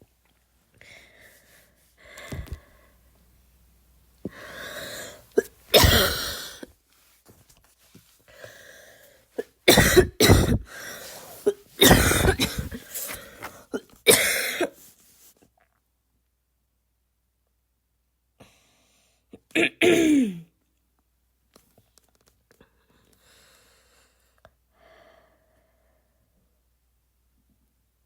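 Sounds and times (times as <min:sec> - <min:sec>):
girl breathing in: 0:04.3 - 0:05.2
girl coughing: 0:05.0 - 0:06.6, 0:09.4 - 0:14.8, 0:19.6 - 0:20.5.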